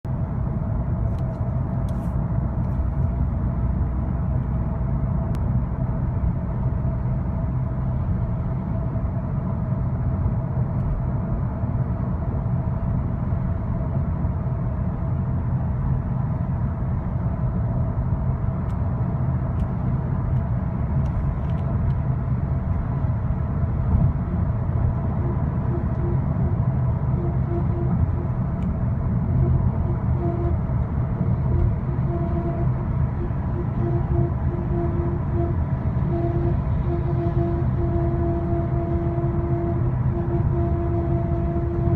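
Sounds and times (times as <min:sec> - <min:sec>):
road and engine rumble: 0:00.0 - 0:41.9
steady whine: 0:17.8 - 0:41.9.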